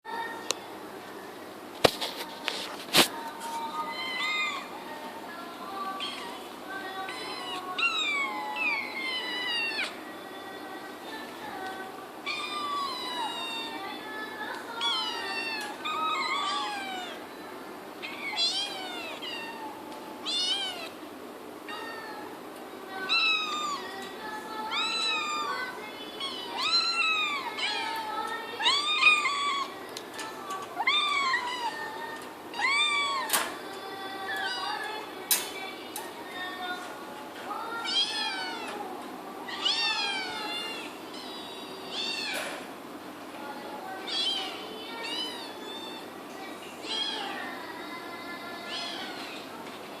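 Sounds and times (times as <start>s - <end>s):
kittens meowing: 3.9s - 4.7s, 7.0s - 10.0s, 12.2s - 13.9s, 14.8s - 17.2s, 18.0s - 21.0s, 23.0s - 23.9s, 24.7s - 29.8s, 30.8s - 33.5s, 39.5s - 42.6s, 44.0s - 46.1s, 48.7s - 49.4s.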